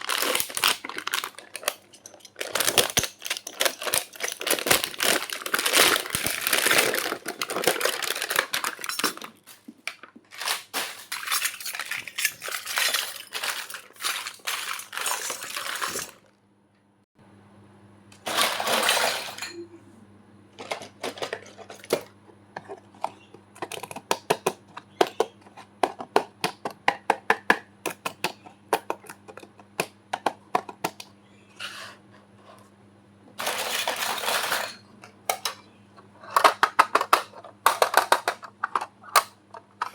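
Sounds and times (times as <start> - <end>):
plastic packaging crinkling: 0.0 - 16.3.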